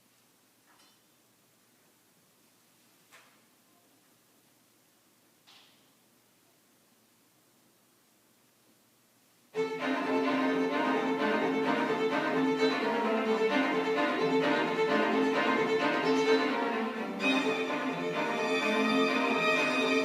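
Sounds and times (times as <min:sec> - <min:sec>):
string quartet bowed strokes: 0:09.6 - 0:20.0.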